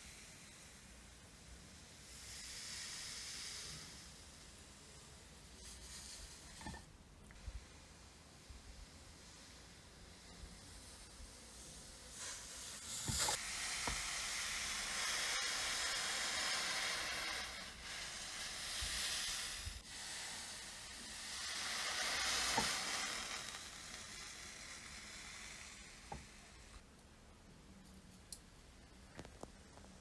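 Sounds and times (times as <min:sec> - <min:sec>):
hissing: 0:07.6 - 0:26.8.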